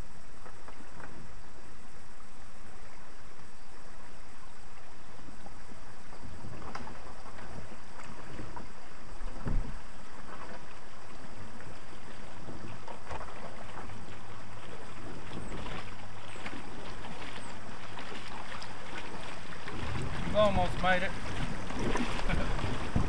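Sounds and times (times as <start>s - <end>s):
rushing water: 0.0s - 23.0s
thump on kayak hull: 6.2s - 10.6s, 19.7s - 23.0s
knocks against kayak hull: 6.4s - 9.8s, 21.3s - 23.0s.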